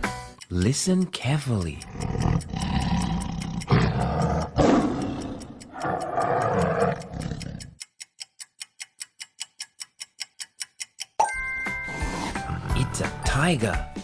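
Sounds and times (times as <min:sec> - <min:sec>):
steady ticking: 0:00.0 - 0:11.2
tiger roaring: 0:01.8 - 0:07.8.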